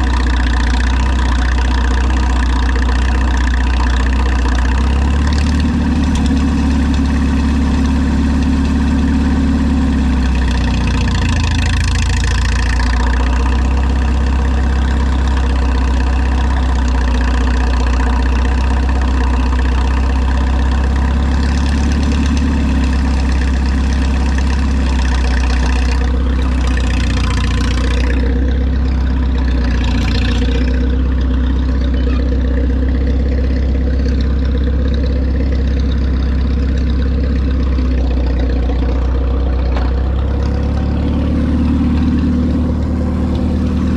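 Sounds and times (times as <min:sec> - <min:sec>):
tractor engine idling: 0:00.0 - 0:43.9.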